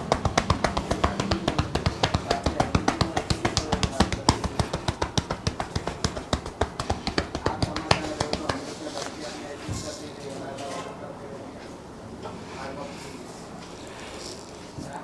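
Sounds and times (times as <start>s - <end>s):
hands slapping on a head: 0.0s - 9.2s.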